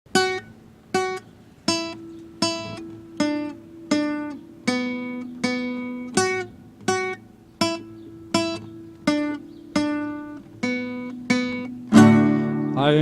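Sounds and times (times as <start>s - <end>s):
guitar chords strummed: 0.1s - 13.0s.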